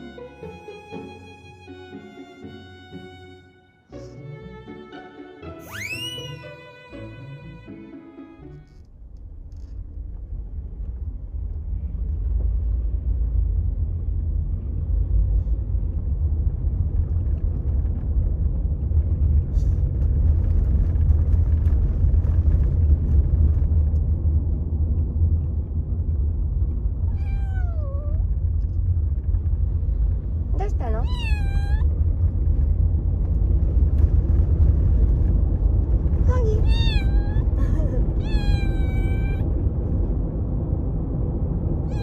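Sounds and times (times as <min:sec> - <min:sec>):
kitten meowing: 0:05.6 - 0:06.5, 0:27.1 - 0:28.2, 0:30.9 - 0:31.9, 0:36.3 - 0:39.5
steady low rumble: 0:08.7 - 0:42.0.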